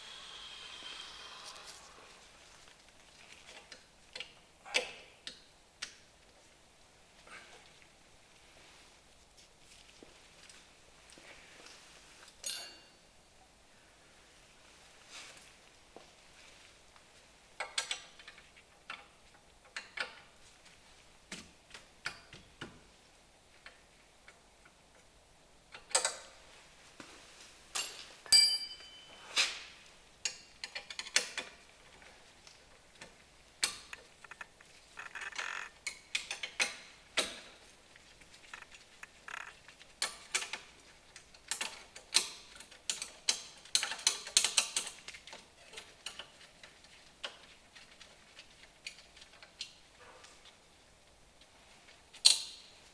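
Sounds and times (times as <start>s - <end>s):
metal parts clicking and clinking: 12.4s - 13.0s
short metallic ring: 28.3s - 29.4s.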